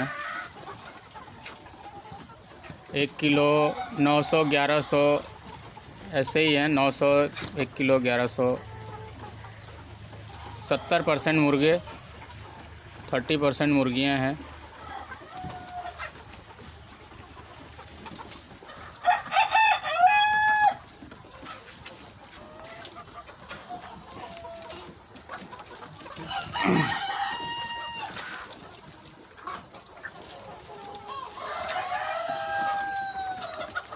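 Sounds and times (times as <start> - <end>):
chickens clucking: 0.0 - 33.9
rooster crowing: 19.0 - 20.8, 26.2 - 28.2, 31.5 - 33.6.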